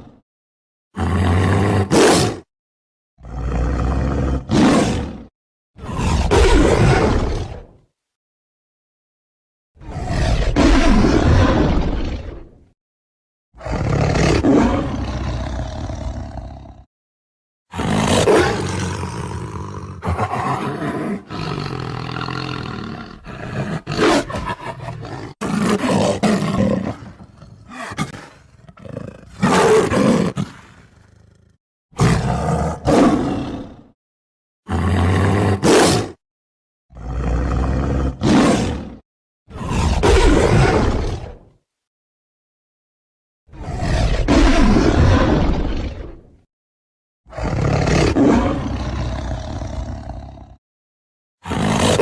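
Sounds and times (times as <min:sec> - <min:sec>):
tiger roaring: 0:01.0 - 0:02.5, 0:03.2 - 0:07.8, 0:09.8 - 0:12.6, 0:13.6 - 0:16.9, 0:17.7 - 0:34.0, 0:34.7 - 0:36.2, 0:36.9 - 0:41.4, 0:43.5 - 0:46.4, 0:47.3 - 0:50.6, 0:51.4 - 0:52.0.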